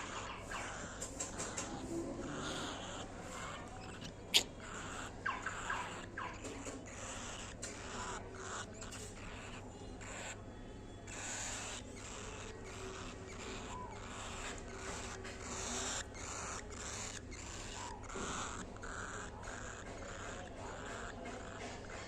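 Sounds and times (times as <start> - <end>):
bird nibbling and pecking: 0.0 - 10.2.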